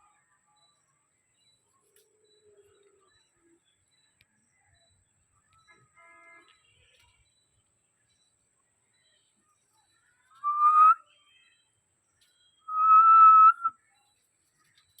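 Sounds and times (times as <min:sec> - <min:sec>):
parrot whistling: 0:10.4 - 0:11.0, 0:12.7 - 0:13.7.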